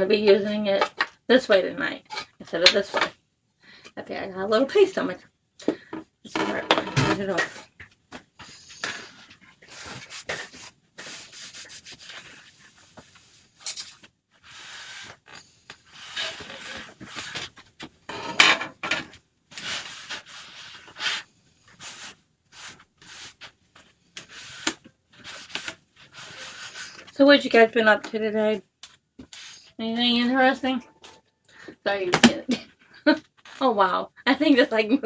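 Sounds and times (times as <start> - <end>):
rubbing and scraping on board: 6.3 - 28.0, 28.9 - 30.3.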